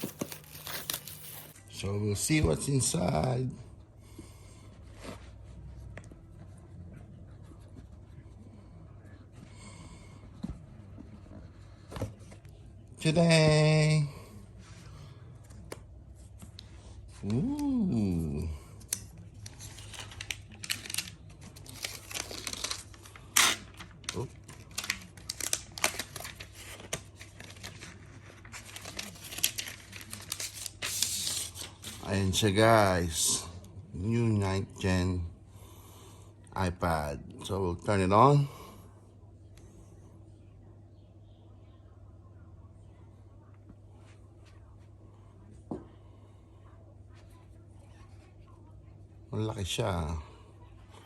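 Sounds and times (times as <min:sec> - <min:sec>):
packaging crinkling and rustling: 0:00.0 - 0:01.6, 0:18.9 - 0:32.0
packaging rustling and scraping: 0:00.0 - 0:01.6.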